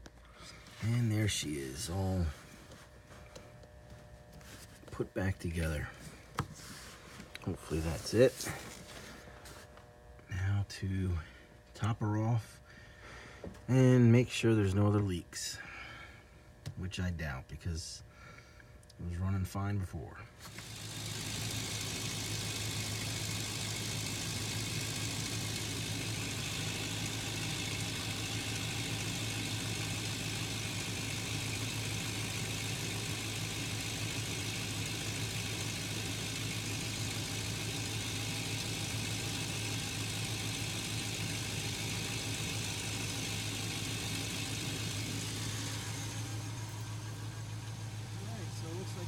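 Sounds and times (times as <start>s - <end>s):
car engine idling: 20.5s - 49.0s.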